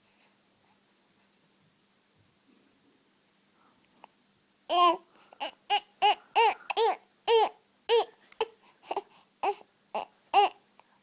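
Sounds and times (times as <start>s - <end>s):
baby making high vocal noises: 4.7s - 10.6s.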